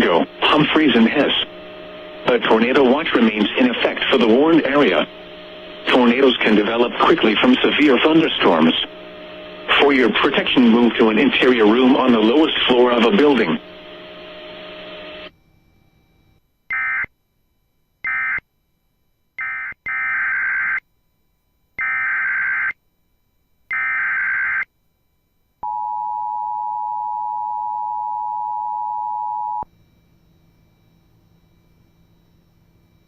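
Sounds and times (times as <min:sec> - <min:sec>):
screeching data bursts: 0:00.0 - 0:15.2
two-tone attention signal: 0:25.6 - 0:29.7.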